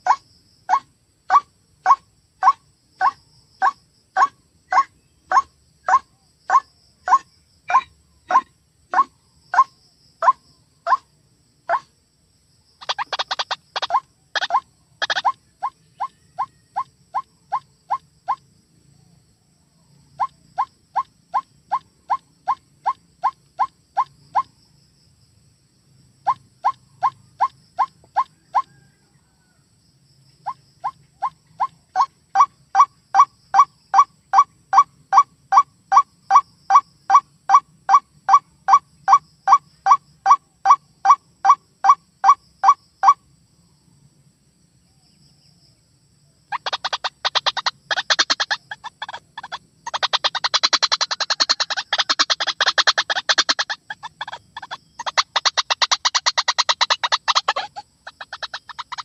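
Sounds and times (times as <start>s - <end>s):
waterhen short calls: 0.1s - 11.0s, 12.8s - 15.4s, 46.5s - 59.0s.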